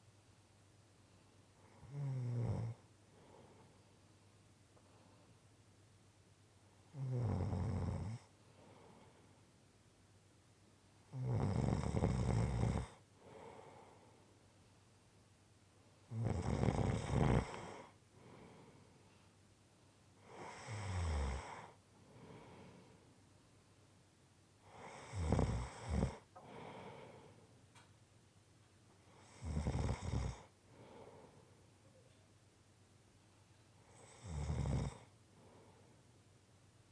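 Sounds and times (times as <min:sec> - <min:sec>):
faint breath: 0:03.0 - 0:04.2, 0:04.8 - 0:05.5, 0:08.3 - 0:09.5, 0:13.2 - 0:14.5, 0:17.5 - 0:19.4, 0:21.4 - 0:23.2, 0:26.3 - 0:27.6, 0:30.6 - 0:32.1, 0:35.0 - 0:36.2
person snoring: 0:16.1 - 0:17.9, 0:24.7 - 0:26.7, 0:29.2 - 0:30.5, 0:34.0 - 0:35.1.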